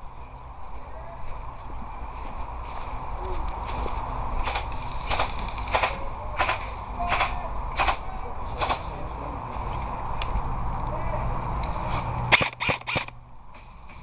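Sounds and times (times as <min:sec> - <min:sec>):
airsoft gun shots: 0:04.4 - 0:09.0, 0:12.3 - 0:13.1.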